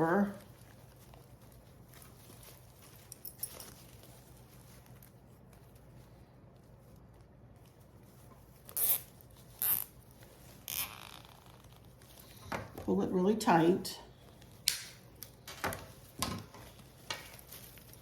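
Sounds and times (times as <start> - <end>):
handling ribbon and garland: 0.0 - 18.0
zip tie being pulled tight: 8.7 - 10.0, 10.6 - 11.8.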